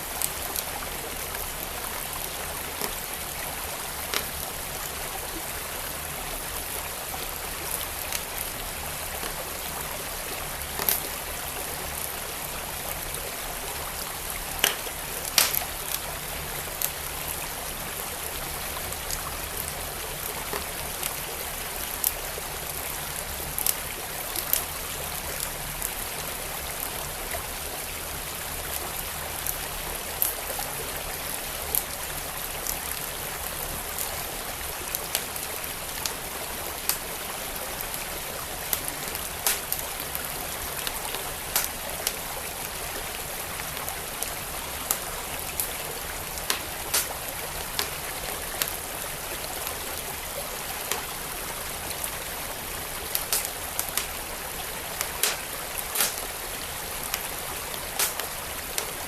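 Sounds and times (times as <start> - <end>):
stream flowing: 0.0 - 59.0
wood fire crackling and popping: 0.2 - 4.4, 7.4 - 11.2, 14.4 - 17.0, 23.5 - 24.7, 34.9 - 37.1, 38.6 - 42.3, 44.8 - 48.9, 50.8 - 51.2, 52.8 - 56.5, 57.1 - 59.0.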